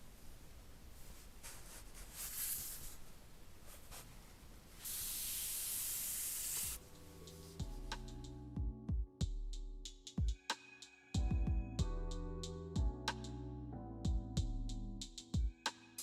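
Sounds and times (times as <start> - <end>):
steady hiss: 0.0 - 8.3
soft rubbing handling noise: 0.1 - 7.9
music with bass and beat: 6.8 - 16.0.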